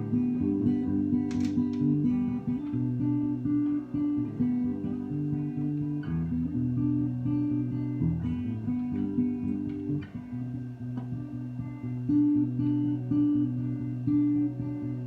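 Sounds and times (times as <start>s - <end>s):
acoustic guitar playing chords: 0.0s - 15.0s.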